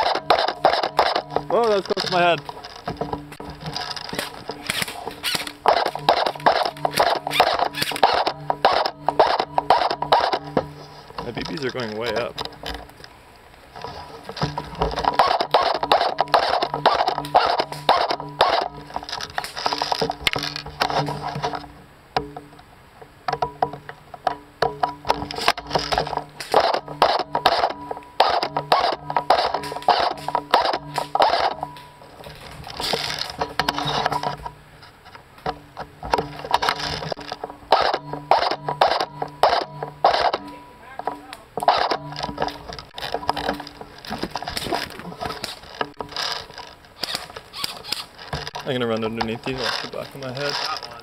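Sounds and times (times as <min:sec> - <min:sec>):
airsoft gun shots: 0:00.0 - 0:01.4, 0:04.1 - 0:10.6, 0:15.1 - 0:18.8, 0:26.4 - 0:31.6, 0:37.7 - 0:40.6, 0:41.6 - 0:42.1
rustling movement: 0:00.0 - 0:51.0
footsteps through brush and twigs: 0:41.4 - 0:48.8.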